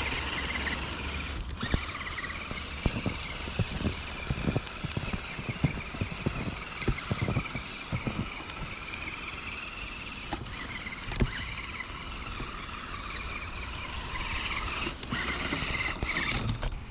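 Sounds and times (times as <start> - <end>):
small electric motor whining: 0.0 - 16.9
short knocks and crunches: 1.4 - 9.0.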